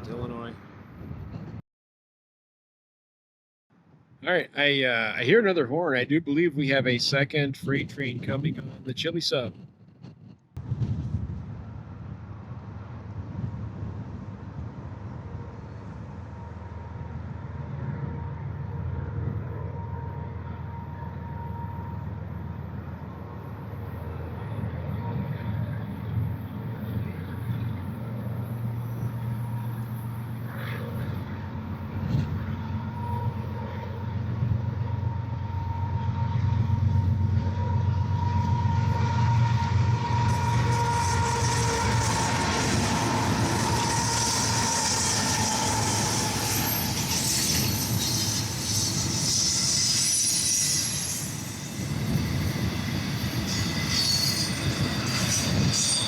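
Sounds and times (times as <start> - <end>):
diesel locomotive rumble: 6.5 - 50.2.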